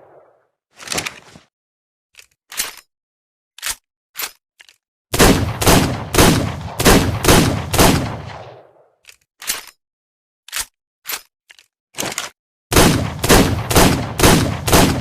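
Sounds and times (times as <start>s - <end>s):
metallic gun action clicks: 3.6s - 4.8s.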